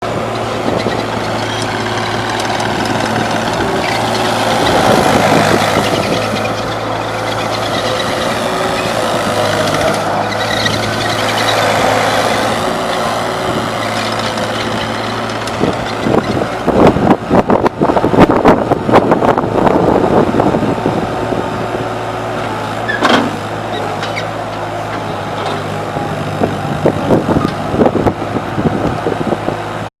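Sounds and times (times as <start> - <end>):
rattling and clanking: 0.0 - 16.8, 22.4 - 25.8
skid steer engine running: 0.0 - 29.9.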